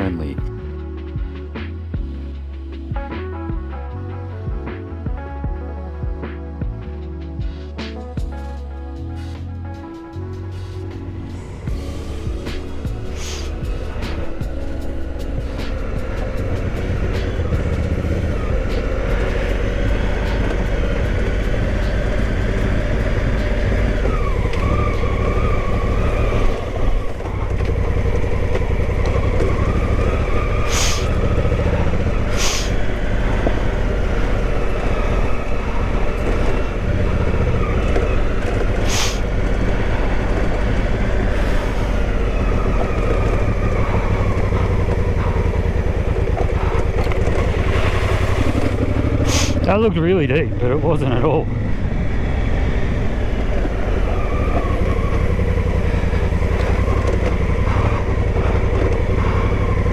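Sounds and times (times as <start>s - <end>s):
motorcycle engine revving: 10.2s - 59.9s.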